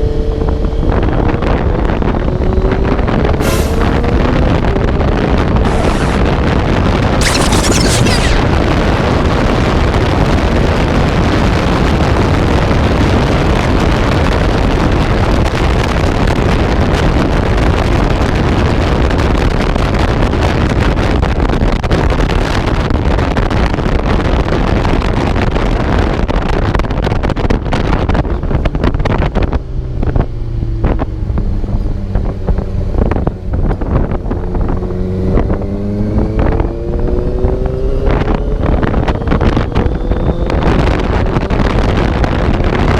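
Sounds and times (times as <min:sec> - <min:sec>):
motorcycle engine accelerating: 0:00.0 - 0:06.4
wind buffeting microphone: 0:00.0 - 0:07.2.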